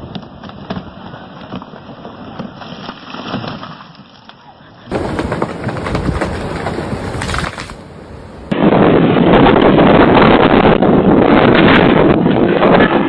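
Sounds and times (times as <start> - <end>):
branches snapping: 4.9 - 8.5
tree wood cracking: 4.9 - 8.6.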